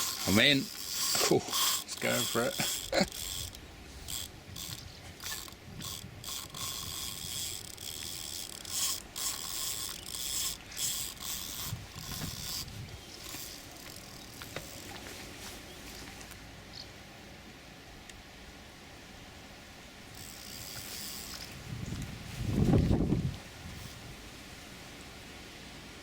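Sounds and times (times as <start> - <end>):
fishing reel clutch ratcheting: 0.0 - 15.0, 20.1 - 22.1.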